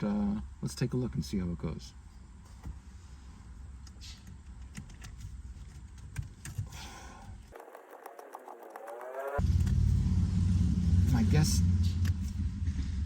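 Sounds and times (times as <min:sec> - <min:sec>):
hands twisting shift knob: 0:03.8 - 0:06.8
low steady hum: 0:09.4 - 0:13.0.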